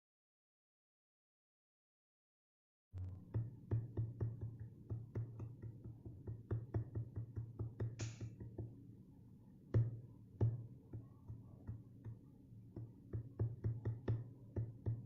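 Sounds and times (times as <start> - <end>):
drum pad percussive hits: 8.0 - 8.3.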